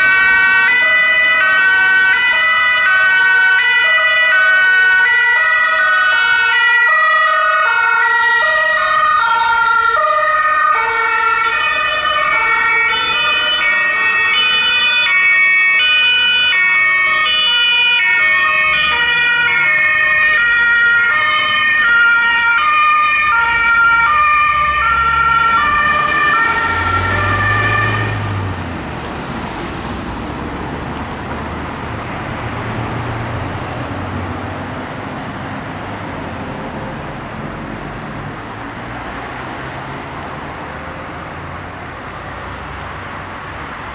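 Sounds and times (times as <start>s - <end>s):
two-tone siren: 0.0s - 28.7s
passing vehicles engine and tyres: 0.0s - 43.9s.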